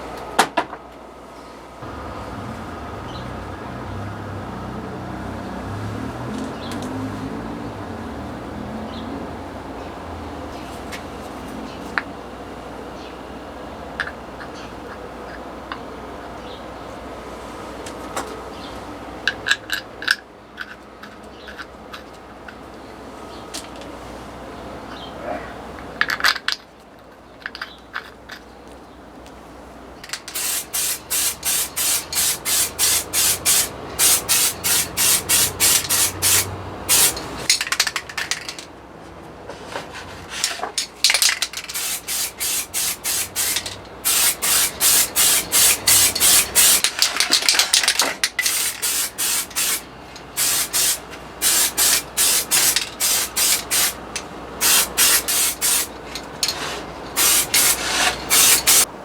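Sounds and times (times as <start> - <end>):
hand scrubbing strokes: 30.4 - 37.3, 56.5 - 58.9.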